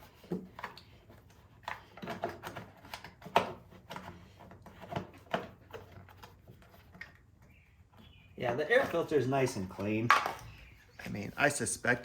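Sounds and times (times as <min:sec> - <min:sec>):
air filter cover clicks and knocks: 0:10.0 - 0:10.4.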